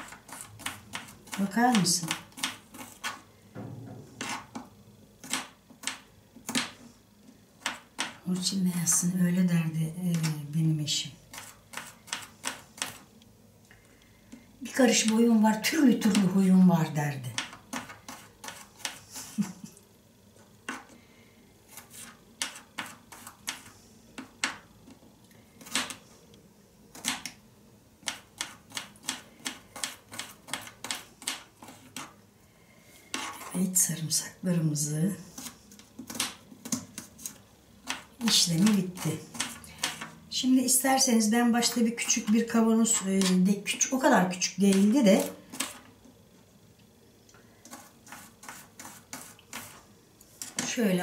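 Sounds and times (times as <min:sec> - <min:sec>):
knife cutting garlic: 0:00.0 - 0:03.2, 0:05.2 - 0:06.8, 0:11.3 - 0:13.0, 0:17.4 - 0:19.5, 0:28.0 - 0:32.1, 0:35.4 - 0:40.2, 0:47.7 - 0:49.8.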